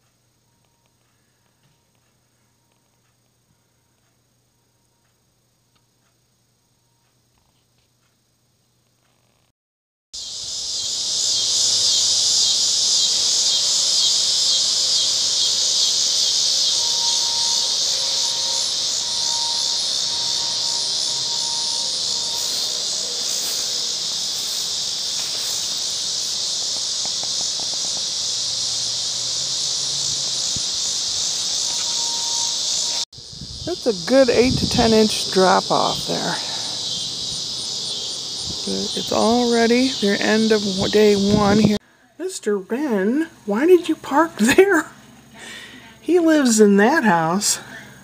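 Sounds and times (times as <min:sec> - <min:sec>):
insect chorus buzzing: 0:10.2 - 0:48.0.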